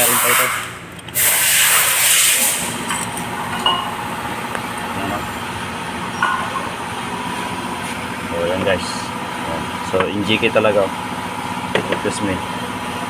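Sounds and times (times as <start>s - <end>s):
loud hiss: 0.0s - 2.8s
car engine idling: 2.6s - 13.0s.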